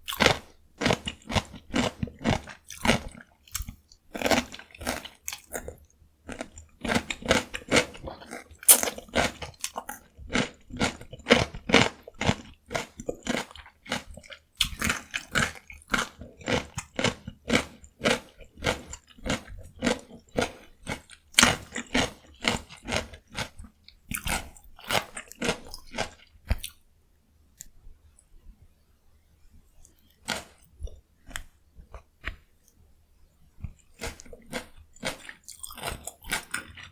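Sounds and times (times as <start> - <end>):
crunchy cucumber chewing: 0.0 - 26.8, 29.8 - 32.4, 33.6 - 36.9.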